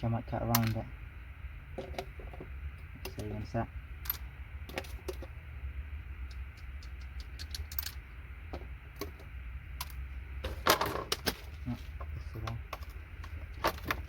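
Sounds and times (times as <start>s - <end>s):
low steady hum: 0.0s - 14.0s
tools clicking and tapping: 6.2s - 11.4s.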